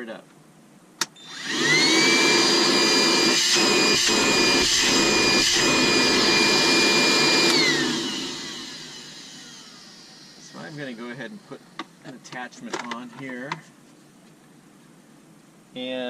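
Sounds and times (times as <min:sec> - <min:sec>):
wet-dry vacuum motor whining: 0:01.1 - 0:11.9.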